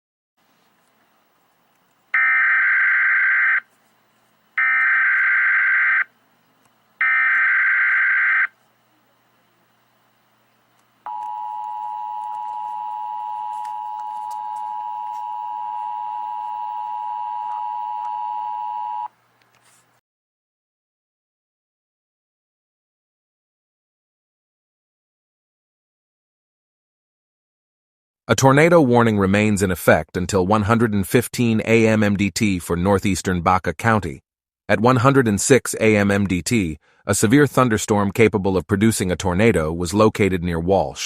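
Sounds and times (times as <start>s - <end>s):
two-tone attention signal: 11.1s - 19.1s.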